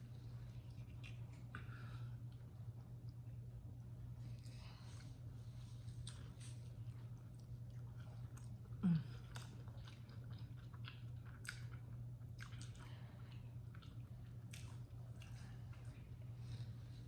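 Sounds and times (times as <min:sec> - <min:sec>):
steady low hum: 0:00.0 - 0:17.0
person chewing crunchy food: 0:05.7 - 0:17.0.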